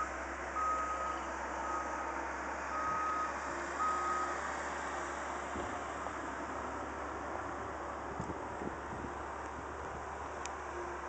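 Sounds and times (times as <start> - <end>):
vehicle reversing alarm beeping: 0.0 - 4.5.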